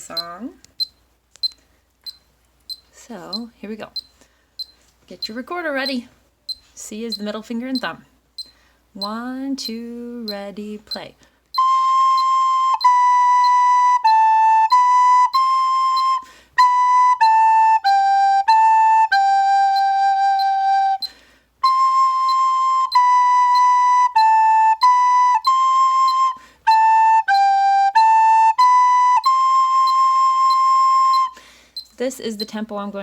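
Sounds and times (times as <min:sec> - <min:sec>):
recorder playing slow melody: 0:09.0 - 0:31.9.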